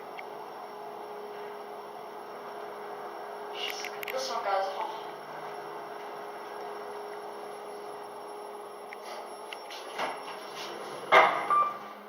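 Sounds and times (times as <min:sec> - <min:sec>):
lift humming: 0:00.0 - 0:12.0
loud clunk: 0:11.1 - 0:11.9.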